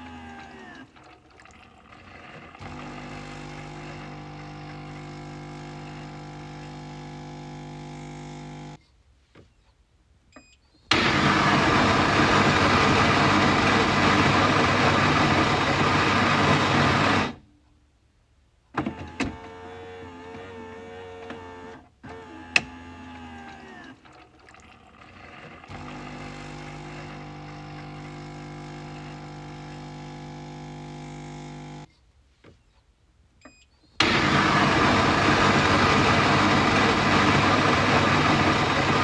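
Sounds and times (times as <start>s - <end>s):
coffee machine hum: 0.1s - 8.8s, 10.9s - 17.4s, 24.1s - 31.9s, 34.0s - 39.0s.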